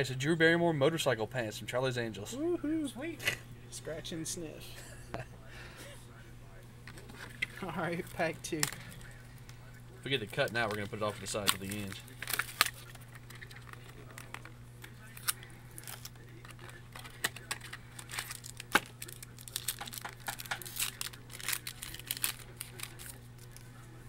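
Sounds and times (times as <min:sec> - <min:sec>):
faint steady hum: 0:00.0 - 0:24.0
wrapper crinkling and tearing: 0:10.1 - 0:23.6.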